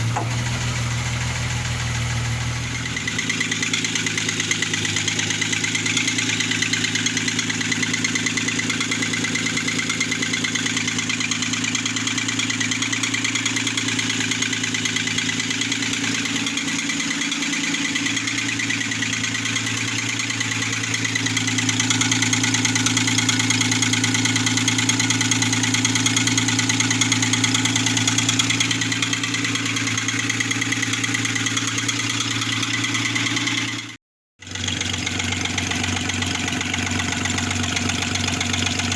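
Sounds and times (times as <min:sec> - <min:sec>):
engine idling with fast knock: 0:00.0 - 0:38.9.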